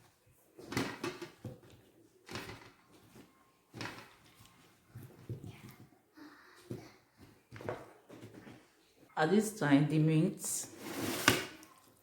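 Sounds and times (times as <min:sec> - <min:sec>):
spoon scraping in a pan: 0:10.6 - 0:11.9.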